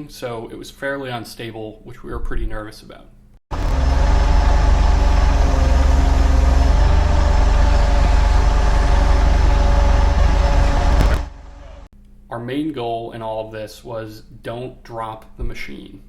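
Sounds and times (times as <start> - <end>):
forklift engine running: 3.5 - 11.9.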